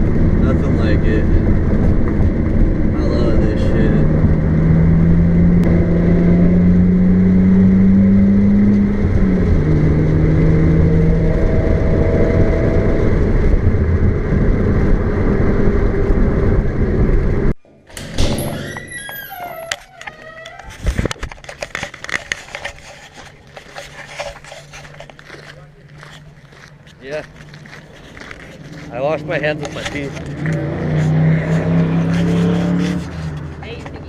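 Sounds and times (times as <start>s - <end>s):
car engine accelerating: 0.0s - 17.6s, 24.7s - 34.0s
road noise: 0.0s - 34.0s.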